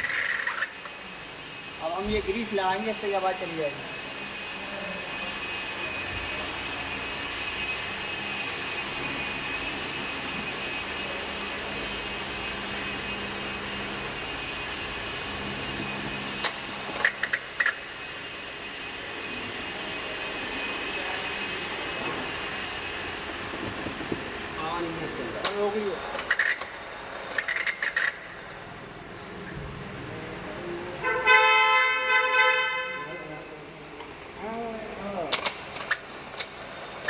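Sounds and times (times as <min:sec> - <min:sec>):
steady mechanical hum: 0:00.0 - 0:37.0
sharp metallic clicks: 0:35.3 - 0:36.7.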